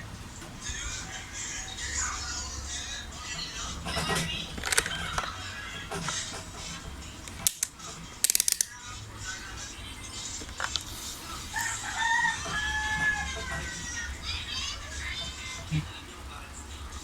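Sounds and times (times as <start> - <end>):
sharp clicks: 7.3 - 8.8
rooster crowing: 11.5 - 14.0.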